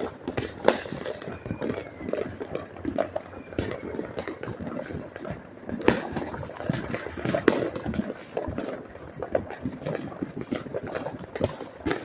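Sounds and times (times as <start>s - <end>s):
fireworks popping and banging: 0.0s - 12.0s.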